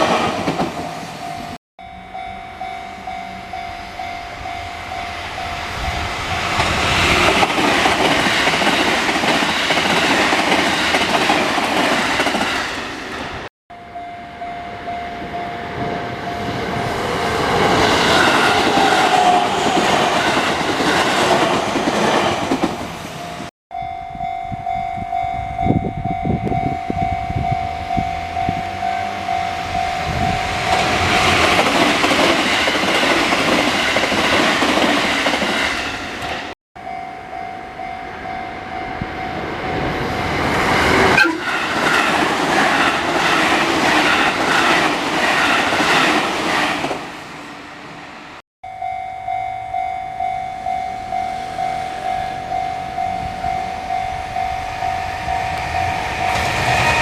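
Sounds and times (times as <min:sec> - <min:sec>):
train rumbling: 0:00.0 - 0:13.5, 0:14.7 - 0:57.0
level-crossing bell dinging: 0:01.2 - 0:06.6, 0:13.7 - 0:16.6, 0:23.2 - 0:31.0, 0:36.8 - 0:39.9, 0:48.6 - 0:56.5.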